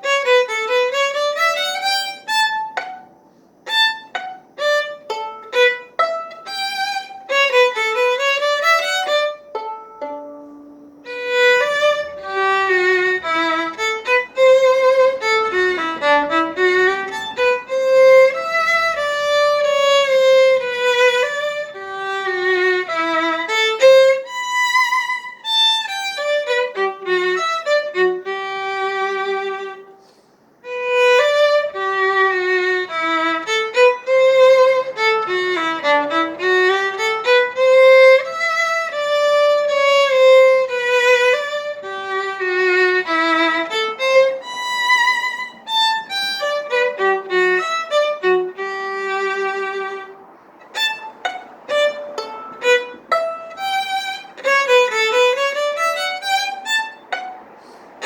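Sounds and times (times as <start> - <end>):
solo violin playing lively tune: 0.0 - 58.0.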